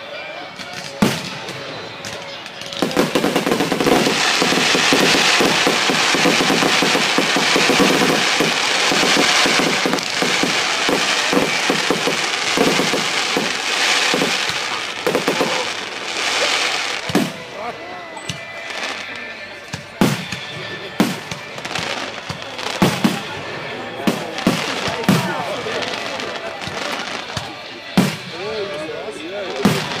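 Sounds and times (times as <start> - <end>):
rapid crackling pops: 0.7 - 17.5
firework bang: 2.8 - 17.5, 28.0 - 28.4.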